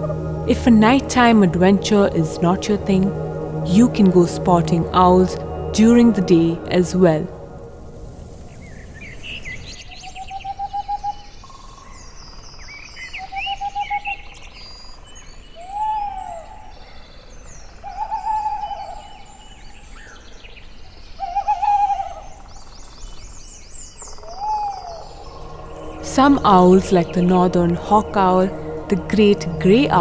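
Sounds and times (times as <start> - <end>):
owl hooting: 8.8 - 12.2, 13.0 - 30.0.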